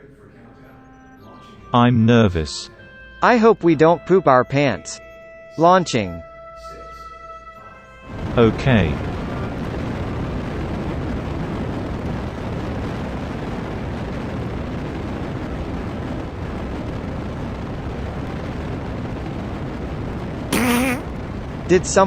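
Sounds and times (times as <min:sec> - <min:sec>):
buzzy fart sound: 0:20.5 - 0:21.1.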